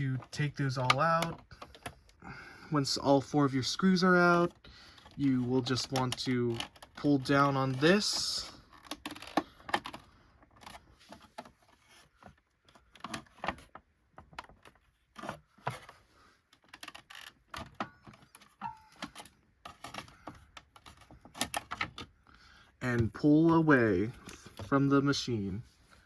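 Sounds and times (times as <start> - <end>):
plastic clicks and rattles: 5.0 - 7.2, 8.7 - 22.2.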